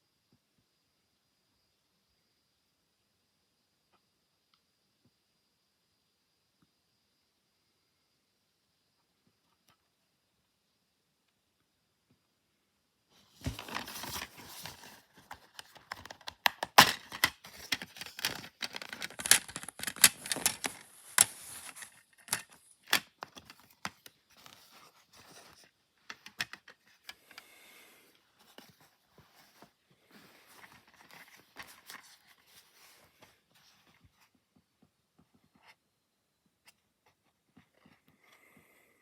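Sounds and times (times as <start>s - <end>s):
plastic wrapping tearing and crinkling: 16.5s - 22.5s.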